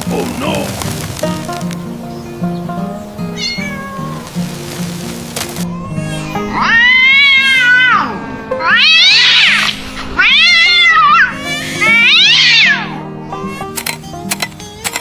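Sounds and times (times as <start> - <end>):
background music: 0.0 - 15.0
drawn-out animal cries: 0.0 - 15.0
sharp clicks: 13.6 - 15.0.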